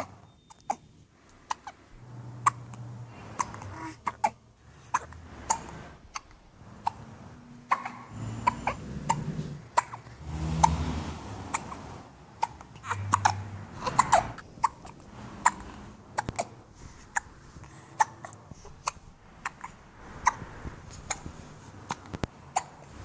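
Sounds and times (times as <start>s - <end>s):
baby hiccuping: 0.0s - 0.8s, 1.5s - 1.8s, 2.4s - 2.8s, 3.4s - 7.0s, 7.7s - 8.8s, 9.8s - 10.2s, 12.4s - 15.6s, 16.2s - 17.3s, 18.0s - 20.4s, 21.9s - 22.9s
low vocal sound: 6.6s - 12.1s.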